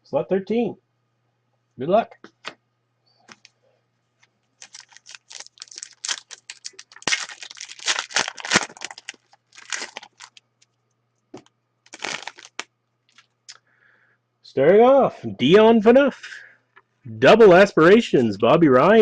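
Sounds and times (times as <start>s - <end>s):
foil wrapper crinkling: 4.6s - 10.4s, 11.4s - 13.3s.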